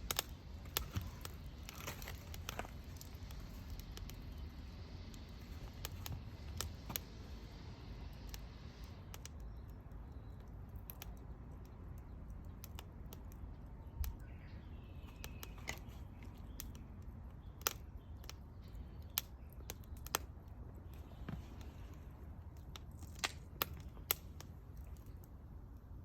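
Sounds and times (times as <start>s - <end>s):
wood fire crackling and popping: 0.0s - 26.0s.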